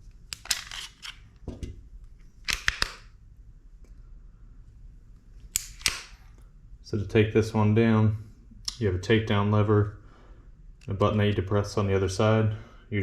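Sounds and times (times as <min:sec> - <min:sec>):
pistol metallic clicks: 0:02.4 - 0:03.1, 0:05.5 - 0:06.3.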